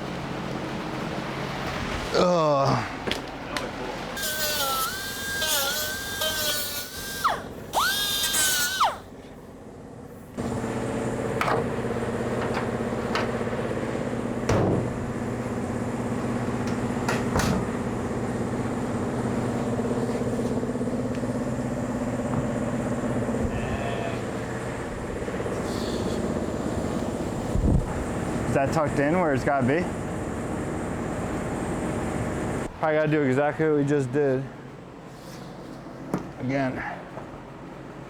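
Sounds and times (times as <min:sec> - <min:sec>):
low mechanical hum: 0:00.0 - 0:38.0
rotary power tool whining: 0:04.2 - 0:09.1.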